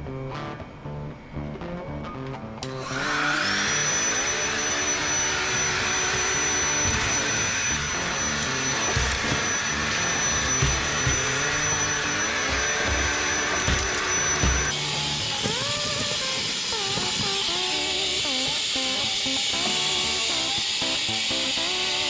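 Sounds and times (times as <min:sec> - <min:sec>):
guitar background music: 0:00.0 - 0:22.0
handheld vacuum motor whine: 0:02.6 - 0:22.0.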